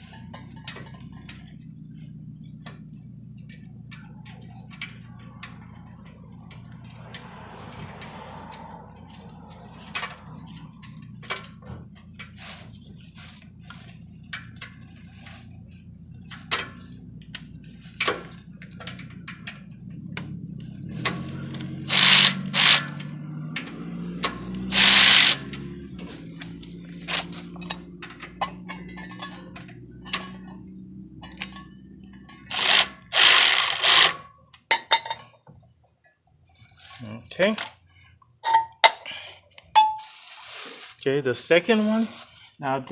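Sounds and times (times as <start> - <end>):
ratchet wrench clicking: 21.0 - 25.7, 32.2 - 34.2.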